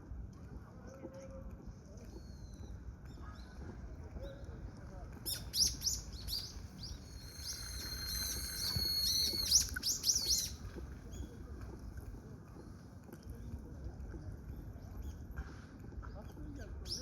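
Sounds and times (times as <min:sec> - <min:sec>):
kingfisher chirps and whistle: 0:05.3 - 0:10.6.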